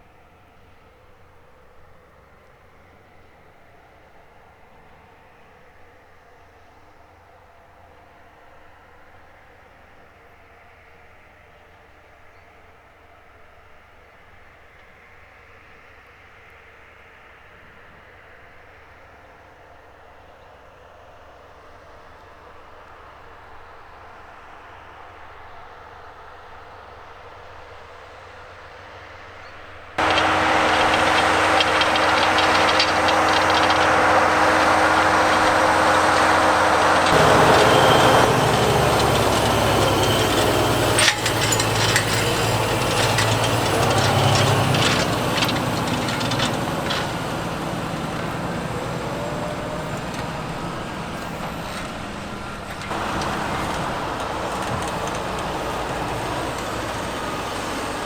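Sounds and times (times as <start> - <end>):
tractor engine running under load: 30.0 - 58.0.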